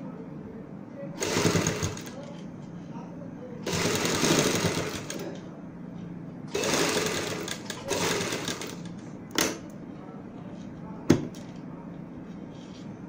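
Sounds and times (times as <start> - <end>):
sewing machine stitching: 1.2 - 2.2, 3.6 - 5.3, 6.5 - 8.9.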